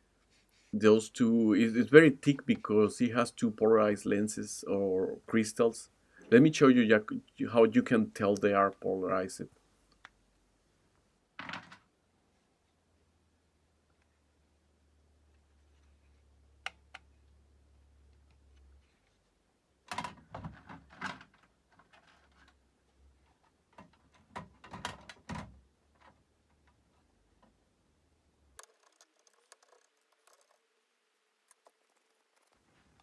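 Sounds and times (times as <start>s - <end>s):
small parts tapping and clattering: 19.9s - 22.6s, 28.6s - 30.8s
plastic parts clicking: 28.6s - 30.7s.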